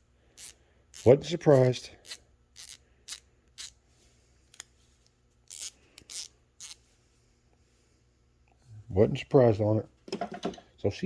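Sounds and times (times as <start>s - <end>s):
ratchet clicking: 0.4s - 3.8s, 5.5s - 6.8s.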